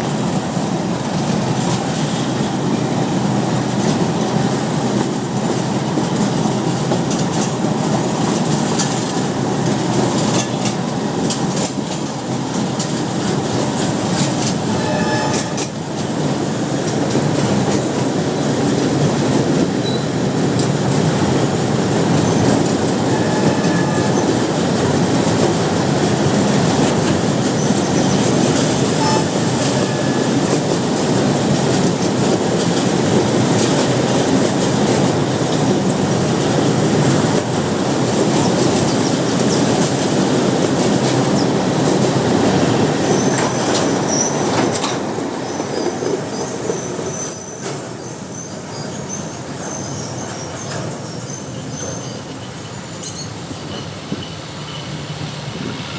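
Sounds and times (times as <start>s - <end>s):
train rumbling past on rails: 0.0s - 55.9s
high thin wheel squeals: 14.4s - 15.8s, 19.8s - 20.2s, 22.2s - 24.4s, 28.8s - 30.5s, 43.1s - 55.2s.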